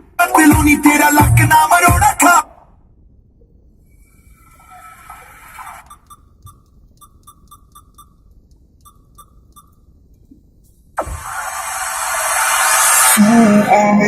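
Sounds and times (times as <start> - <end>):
music through car speakers: 0.0 - 2.6, 11.0 - 14.0.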